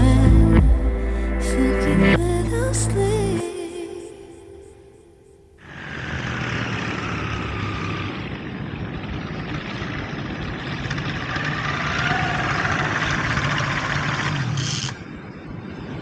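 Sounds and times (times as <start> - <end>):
paramotor engine and propeller: 5.6 - 15.5.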